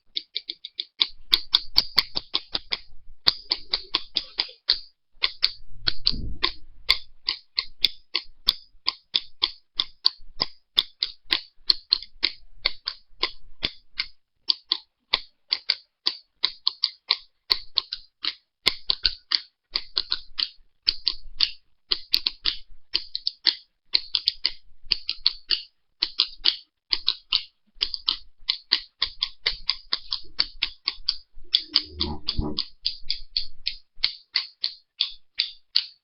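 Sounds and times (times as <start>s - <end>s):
sharp high clicks: 0.1s - 36.0s.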